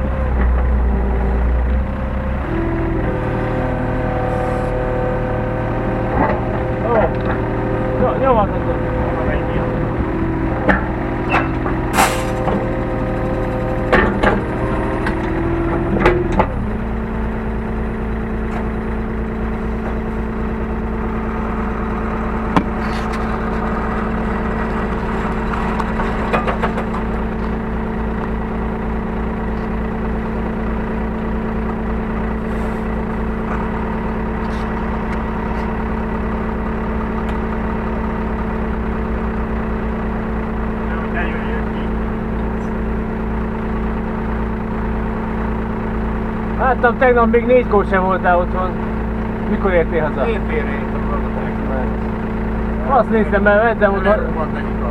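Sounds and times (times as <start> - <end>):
excavator diesel engine running: 0.0 - 54.9
sharp clunks: 22.5 - 23.4.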